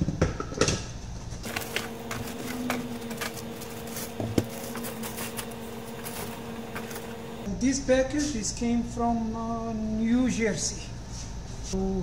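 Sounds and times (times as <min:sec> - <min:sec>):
steady low hum: 0:01.2 - 0:10.0.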